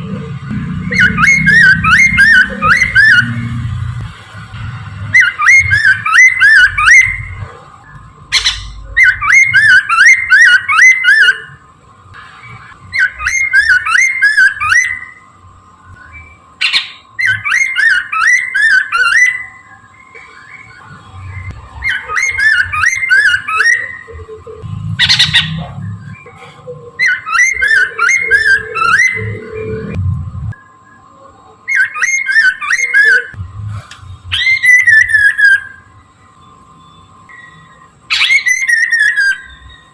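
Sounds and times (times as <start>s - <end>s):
bird singing whistled notes: 0.7s - 3.6s, 5.1s - 11.6s, 12.9s - 24.4s, 27.0s - 30.0s, 30.6s - 33.4s, 34.3s - 39.9s
sharp bird calls: 0.7s - 3.6s, 5.1s - 11.6s, 12.4s - 29.9s, 31.6s - 33.4s, 34.3s - 39.9s.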